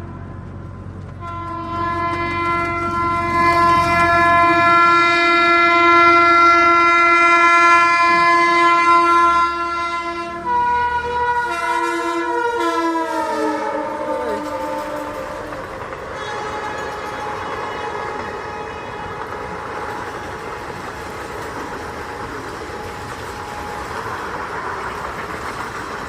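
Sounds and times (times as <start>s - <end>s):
train rumble: 0.0s - 26.0s
train horn blast: 1.2s - 20.8s.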